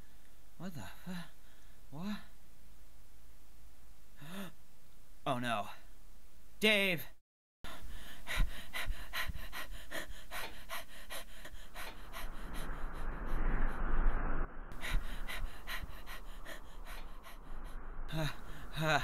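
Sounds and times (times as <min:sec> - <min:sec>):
man panting: 0:07.7 - 0:13.5, 0:14.8 - 0:19.0
rushing noise: 0:10.8 - 0:19.0.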